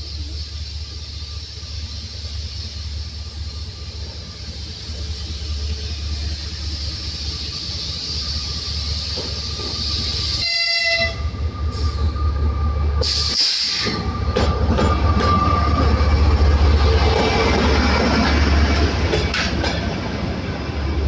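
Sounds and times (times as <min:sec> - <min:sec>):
train wheels rumbling on rails: 0:00.0 - 0:21.0
horn-like tone: 0:10.4 - 0:11.4.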